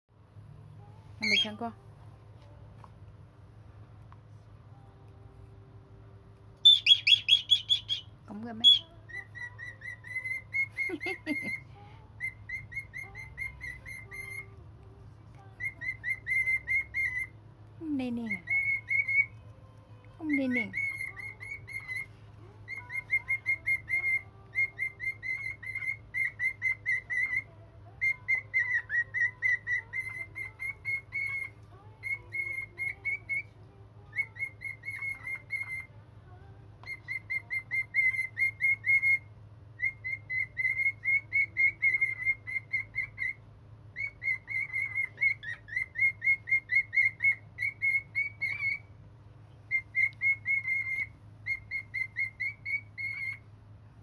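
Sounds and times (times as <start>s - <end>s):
cockatiel chirping: 1.2s - 1.7s, 6.6s - 14.6s, 15.4s - 17.3s, 18.2s - 19.4s, 20.2s - 35.9s, 36.8s - 48.9s, 49.7s - 53.4s.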